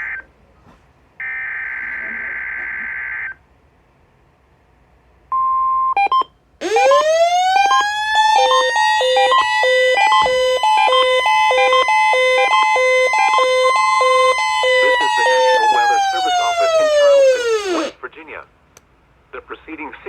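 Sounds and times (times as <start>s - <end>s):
siren-like alarm tone: 6.6s - 18.0s
short alarm beeps: 7.7s - 17.9s
two-pitch alternating beep: 8.4s - 15.5s.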